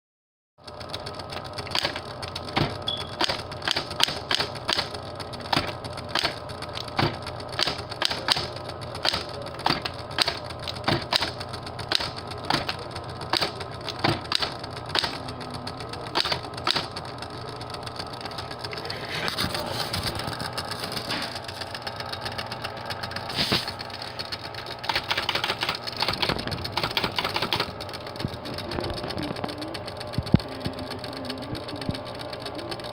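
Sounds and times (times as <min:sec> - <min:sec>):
typewriter keys clacking: 0:01.5 - 0:17.2, 0:23.3 - 0:30.8.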